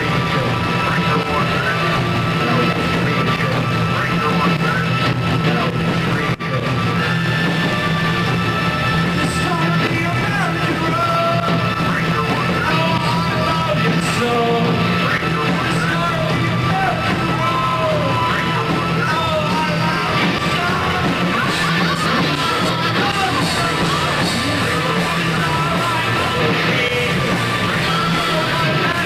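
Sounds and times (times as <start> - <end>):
live rock band: 0.0 - 29.0
lead vocals singing: 9.1 - 29.0.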